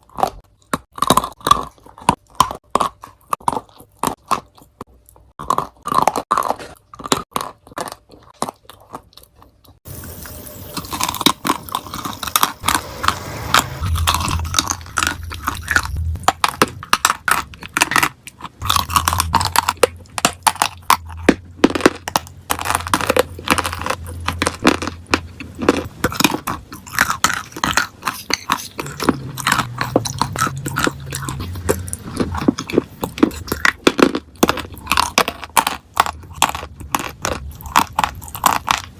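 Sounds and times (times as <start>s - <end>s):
crunching and chewing: 0.0s - 38.9s
low hum: 9.9s - 26.9s.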